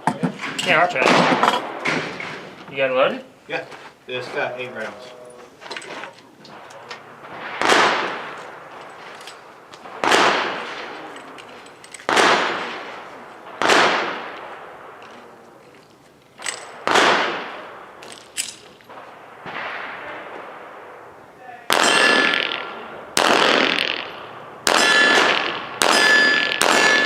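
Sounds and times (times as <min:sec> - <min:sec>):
pistol shots with echo: 0:01.0 - 0:02.5, 0:06.5 - 0:15.4, 0:16.4 - 0:27.0.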